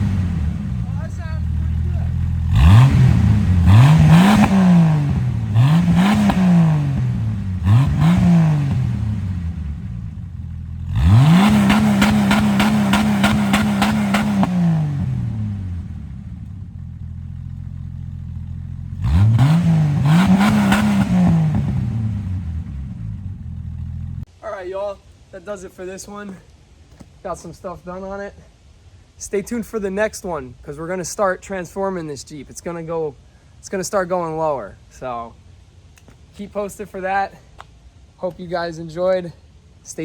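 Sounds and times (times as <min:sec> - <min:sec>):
car engine revving: 0:00.0 - 0:24.3.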